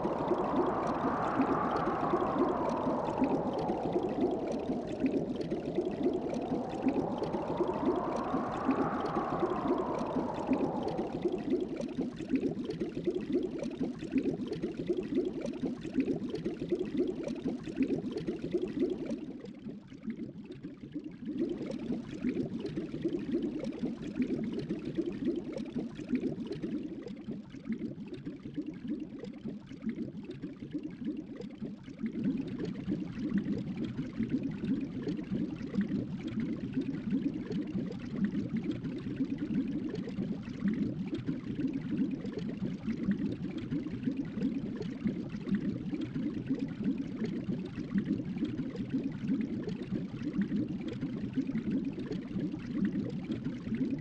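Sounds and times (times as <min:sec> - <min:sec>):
low watery rush: 0:00.0 - 0:12.8.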